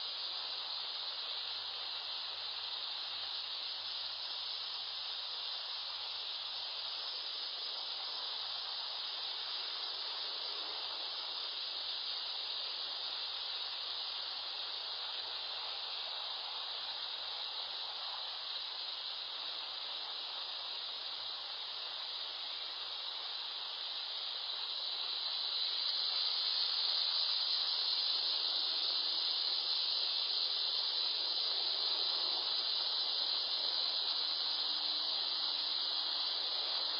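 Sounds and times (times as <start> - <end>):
steady high-pitched hiss: 0.0 - 36.9.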